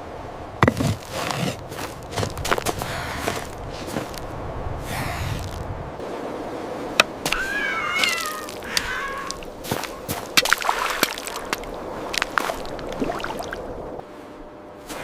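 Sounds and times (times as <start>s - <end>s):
cat meowing: 7.4s - 9.4s.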